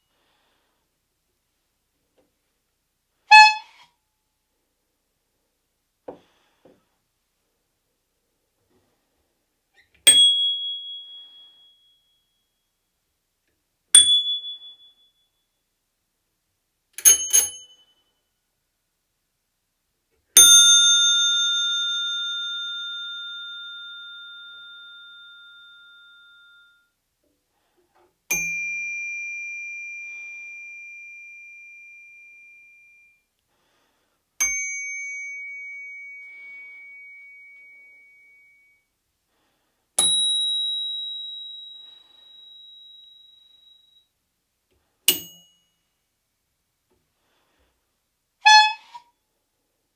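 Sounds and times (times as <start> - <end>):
bicycle bell dings: 10.1 - 12.1, 14.0 - 15.2, 17.0 - 18.0, 20.4 - 26.9, 28.3 - 33.2, 34.4 - 38.7, 40.0 - 44.0, 45.1 - 45.8.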